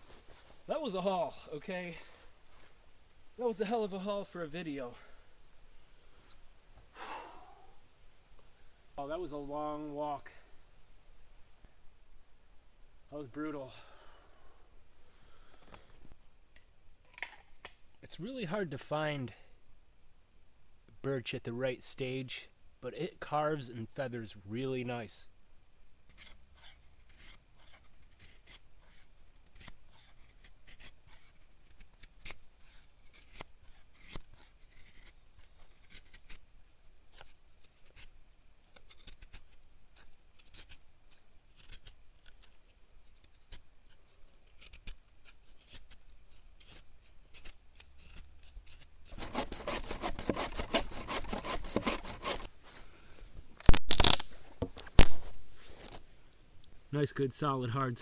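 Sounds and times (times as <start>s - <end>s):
knife scraping wood: 26.1s - 36.4s, 37.1s - 52.9s, 53.6s - 56.0s.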